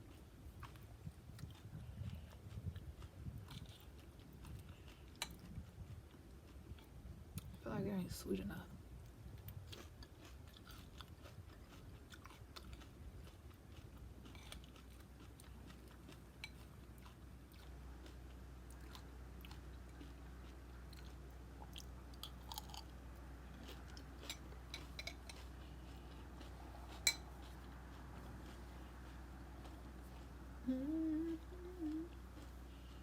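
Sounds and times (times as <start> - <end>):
person chewing crunchy cereal: 0.0 - 7.6, 9.0 - 33.0
low steady hum: 0.0 - 33.0.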